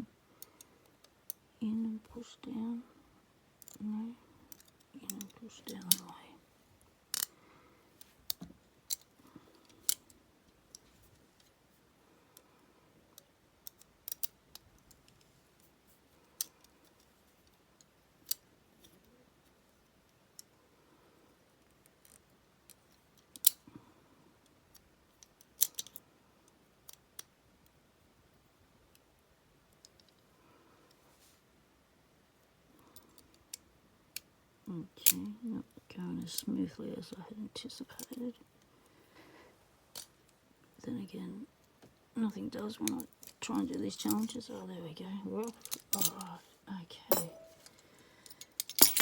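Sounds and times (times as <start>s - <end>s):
metallic clicks in a lock: 13.6s - 14.6s, 23.3s - 23.6s, 25.5s - 26.0s, 48.4s - 49.0s.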